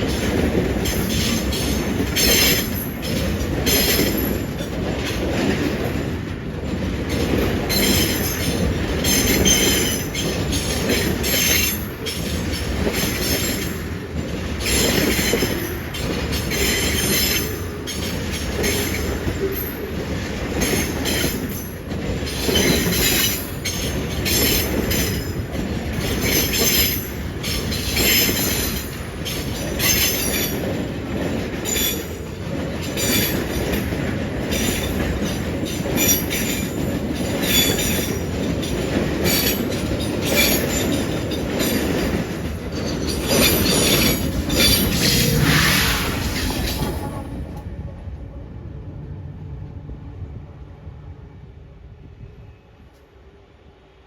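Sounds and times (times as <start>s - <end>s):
tank cars rumbling on rails: 20.4s - 47.6s.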